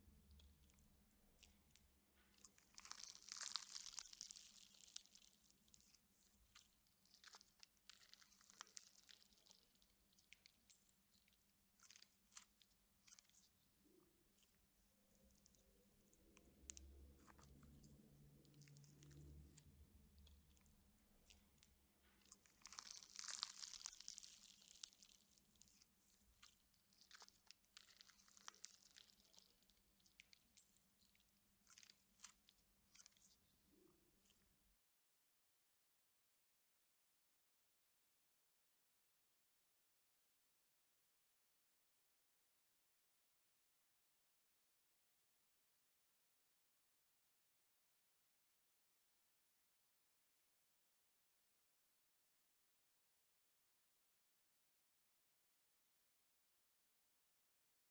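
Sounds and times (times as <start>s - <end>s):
slime with beads crackling: 0.0s - 33.9s.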